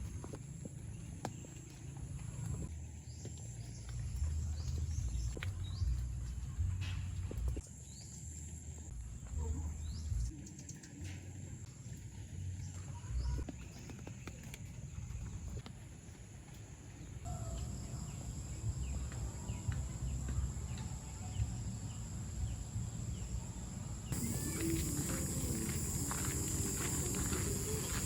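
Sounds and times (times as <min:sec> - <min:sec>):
bird chirps: 0:24.0 - 0:28.0
high hiss: 0:24.1 - 0:28.0.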